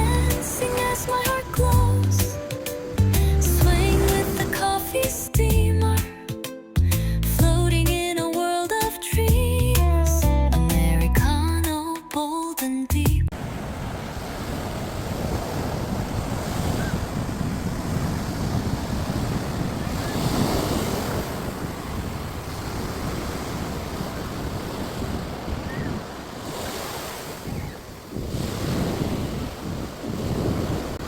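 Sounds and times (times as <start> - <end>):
surf breaking on beach: 0.0 - 5.2, 13.4 - 31.0
wind buffeting microphone: 13.4 - 31.0.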